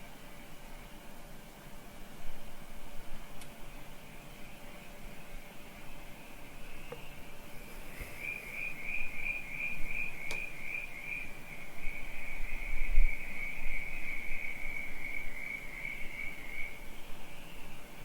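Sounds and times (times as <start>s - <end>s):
cricket trilling: 4.2s - 17.8s.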